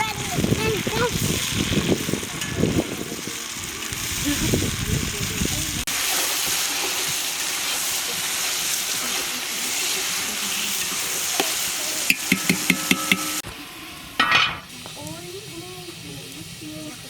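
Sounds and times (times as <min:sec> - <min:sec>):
food sizzling in hot oil: 0:00.0 - 0:17.0
metal utensil tapping pan: 0:12.1 - 0:13.4.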